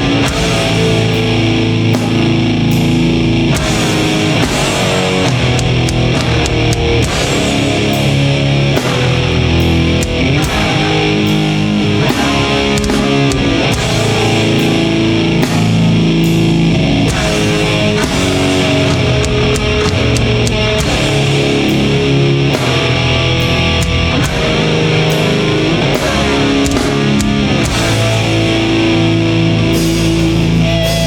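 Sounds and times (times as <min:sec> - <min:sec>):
distorted electric guitars: 0:00.0 - 0:31.0
drum kit beat: 0:00.0 - 0:31.0.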